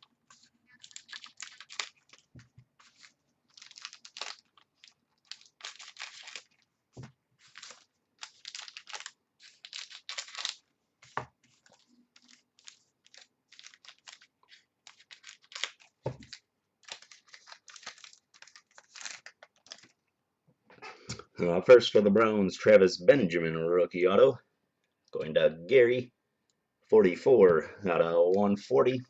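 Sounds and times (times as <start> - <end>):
wrappers tearing and crinkling: 0.0 - 6.7, 7.4 - 10.6, 11.5 - 20.0.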